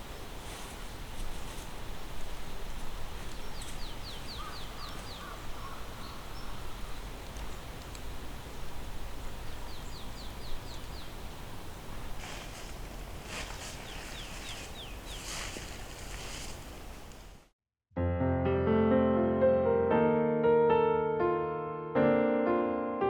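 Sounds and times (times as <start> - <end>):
small bird trilling: 3.4 - 6.8.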